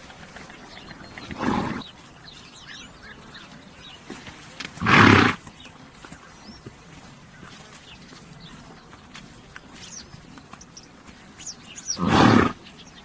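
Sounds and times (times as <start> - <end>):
horse snorting: 0.0 - 1.9, 4.7 - 5.5, 11.9 - 12.6
faint bird chirps: 0.2 - 4.2.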